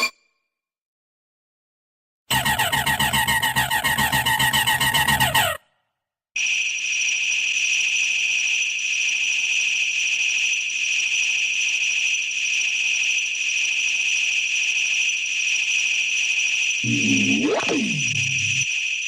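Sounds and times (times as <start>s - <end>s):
synthesized laser tone: 16.8s - 18.7s.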